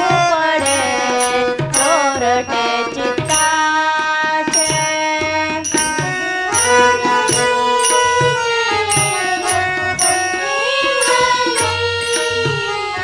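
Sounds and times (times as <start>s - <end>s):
devotional melody: 0.0s - 13.0s
small cymbal strikes: 0.6s - 3.8s, 4.5s - 13.0s
steady drum beat: 4.5s - 12.8s.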